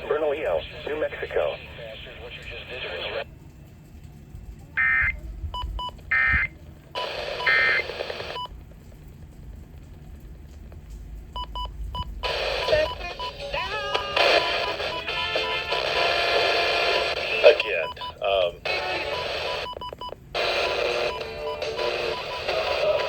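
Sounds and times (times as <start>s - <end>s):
radio broadcast with music: 0.0s - 3.3s, 4.8s - 8.5s, 12.2s - 19.8s, 20.4s - 23.0s
warbling digital data tones: 7.4s - 8.5s.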